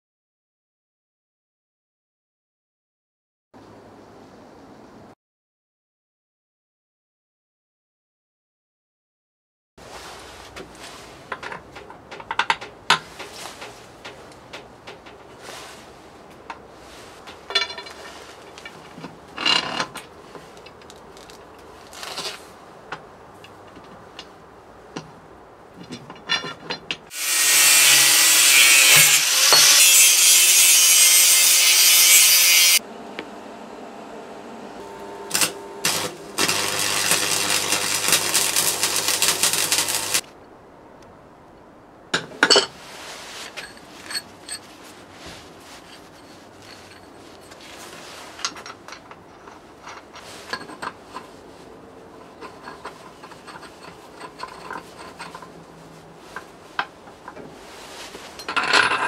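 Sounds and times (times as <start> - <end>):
tools and parts clinking: 10.4 - 27.1, 42.1 - 42.8, 43.4 - 51.5, 52.1 - 59.0
power tool running: 27.1 - 29.8, 31.2 - 40.2.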